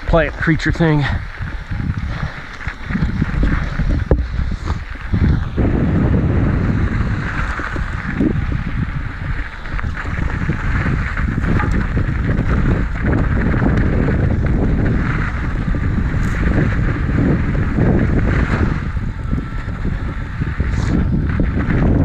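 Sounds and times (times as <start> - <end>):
mountain bike rattling on dirt trail: 0.0 - 22.0
wind buffeting microphone: 0.0 - 22.0.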